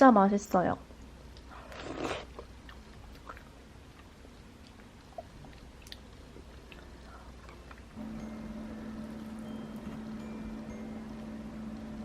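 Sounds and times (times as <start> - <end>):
chewing: 1.4 - 7.9.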